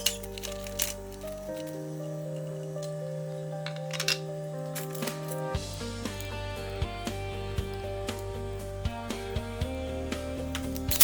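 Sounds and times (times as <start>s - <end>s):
instrumental background music: 0.0s - 11.0s
deep bass: 5.6s - 11.0s.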